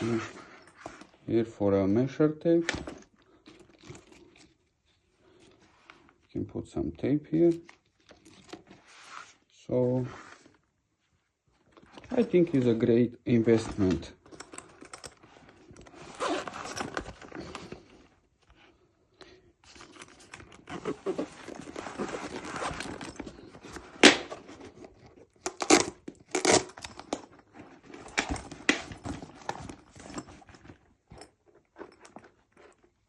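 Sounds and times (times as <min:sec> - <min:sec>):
fabric bag rustling: 0:00.0 - 0:01.2, 0:20.6 - 0:23.8.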